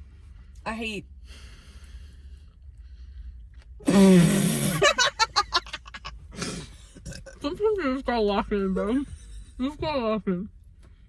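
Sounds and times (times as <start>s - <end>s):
low rasping burp: 6.4s - 7.4s.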